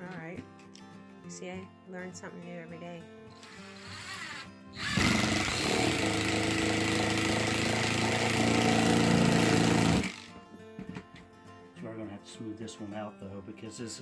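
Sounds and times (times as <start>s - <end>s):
power drill driving screw into wood: 3.4s - 10.4s.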